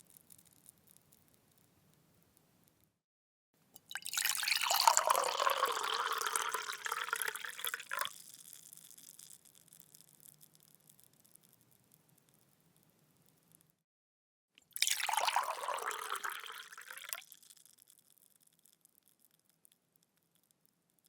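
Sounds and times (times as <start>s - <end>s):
liquid pouring into a glass: 3.8s - 9.4s, 14.7s - 17.8s.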